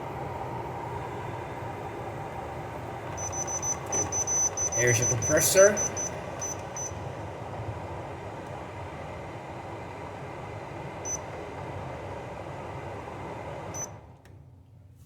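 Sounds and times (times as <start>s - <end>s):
dehumidifier humming: 0.0s - 15.0s
control panel beeping: 3.2s - 7.0s.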